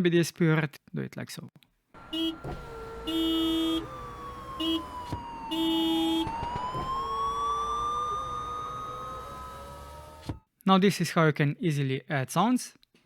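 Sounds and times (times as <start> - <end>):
car horn honks: 2.0 - 6.4
siren wail: 2.0 - 10.4.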